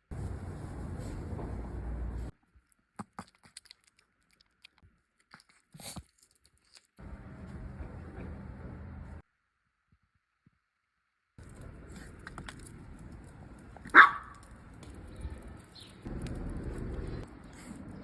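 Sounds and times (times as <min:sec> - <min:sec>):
small dog barking: 0:13.9 - 0:14.4.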